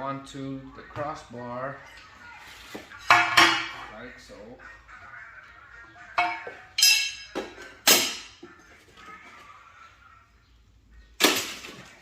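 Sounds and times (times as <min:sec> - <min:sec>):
steel brackets clanking: 0:06.2 - 0:08.4.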